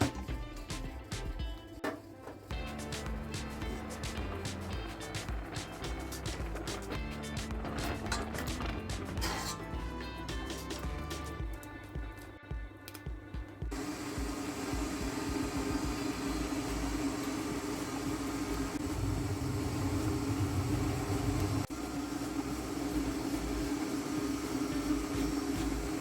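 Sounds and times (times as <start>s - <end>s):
small motor humming: 2.5s - 9.3s, 13.7s - 26.0s.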